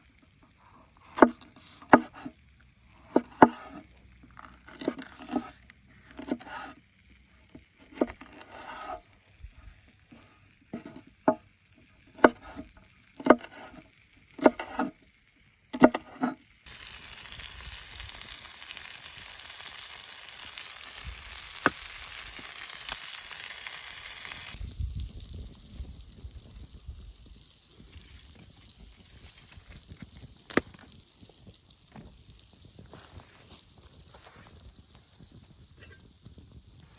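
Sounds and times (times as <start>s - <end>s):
knife chopping on cutting board: 1.2s - 2.3s, 3.1s - 3.8s, 13.2s - 13.7s, 15.8s - 16.3s
food sizzling in hot oil: 15.9s - 36.9s.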